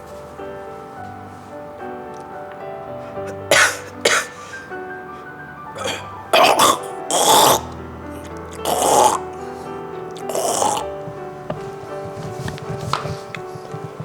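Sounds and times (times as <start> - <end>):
soft background music: 0.0 - 14.0
person coughing violently: 3.5 - 4.4, 5.8 - 7.7, 8.6 - 9.2.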